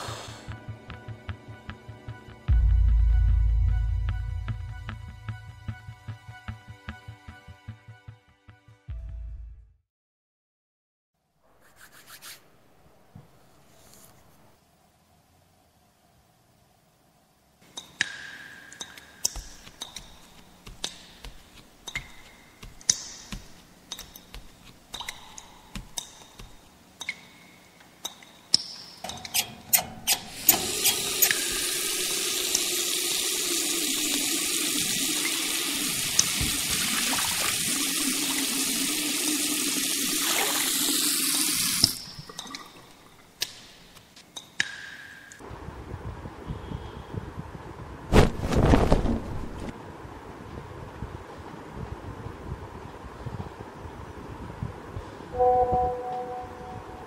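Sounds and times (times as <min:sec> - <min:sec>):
water running: 0:30.4 - 0:43.4.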